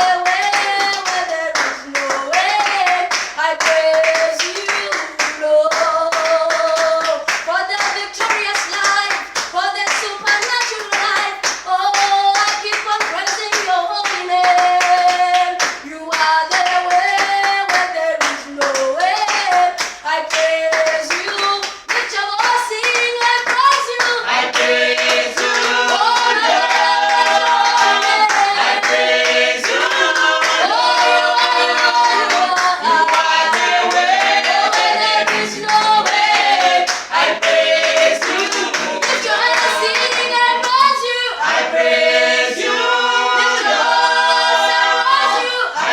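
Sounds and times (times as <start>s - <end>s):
choir singing gospel song: 0.0s - 7.7s, 12.9s - 18.0s, 23.8s - 45.9s
rhythmic hand clapping: 0.0s - 45.9s.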